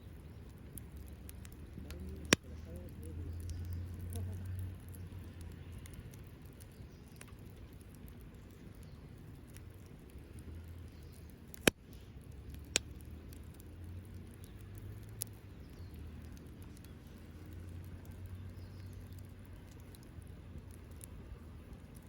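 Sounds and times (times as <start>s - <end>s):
fire popping: 0.0s - 22.0s
wood fire crackling: 0.0s - 22.0s.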